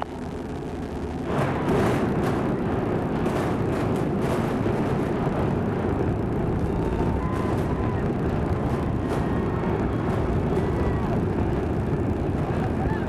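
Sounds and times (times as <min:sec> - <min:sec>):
demolition charges rumbling crackle: 0:00.0 - 0:13.0
sharp demolition blasts: 0:00.7 - 0:12.8.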